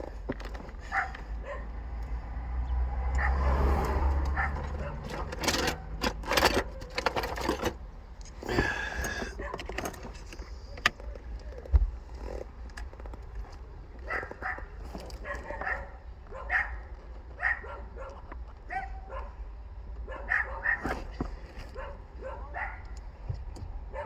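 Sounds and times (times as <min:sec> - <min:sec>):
dog barking and yipping: 0:00.8 - 0:01.8, 0:03.0 - 0:06.0, 0:09.1 - 0:09.7, 0:14.0 - 0:19.4, 0:20.0 - 0:23.0.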